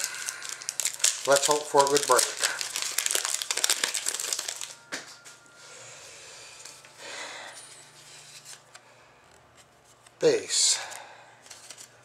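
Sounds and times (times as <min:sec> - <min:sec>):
wrapper crinkling: 0:00.0 - 0:05.2
cards rubbing and rustling: 0:00.7 - 0:04.8.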